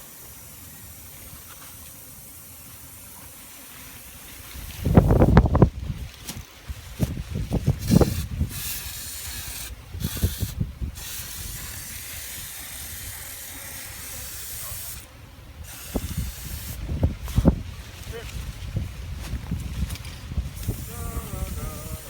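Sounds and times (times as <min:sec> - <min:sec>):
liquid sprayer hissing: 0:00.0 - 0:22.0
wind rumble on microphone: 0:04.2 - 0:14.0, 0:15.1 - 0:22.0.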